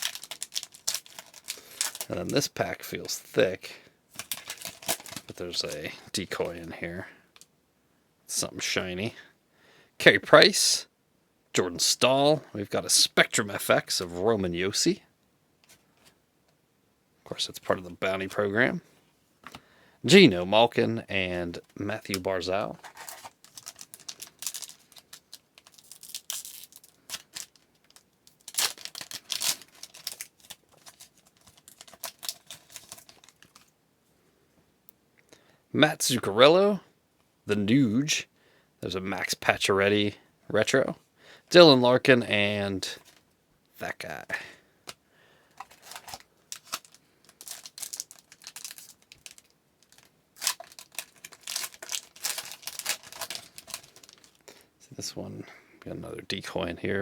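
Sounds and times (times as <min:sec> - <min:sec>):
trading cards clicking and rustling: 0:00.0 - 0:02.5, 0:04.2 - 0:06.6, 0:22.0 - 0:33.7, 0:45.6 - 0:54.4
wrapper ripping: 0:00.0 - 0:02.5, 0:04.2 - 0:05.8, 0:22.1 - 0:33.7, 0:45.6 - 0:54.4
foil wrapper crinkling: 0:00.0 - 0:03.2, 0:04.1 - 0:06.6, 0:22.0 - 0:33.7, 0:45.5 - 0:54.5.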